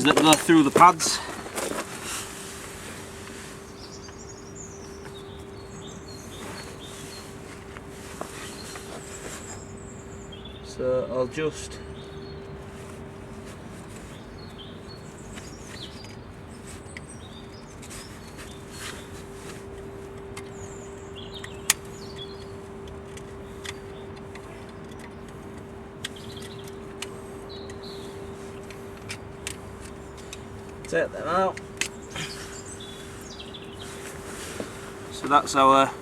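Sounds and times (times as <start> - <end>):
steady hum: 0.0 - 36.0
faint bird chirps: 3.2 - 13.1, 14.1 - 29.0, 31.9 - 35.2
small metallic clicks: 14.0 - 35.6.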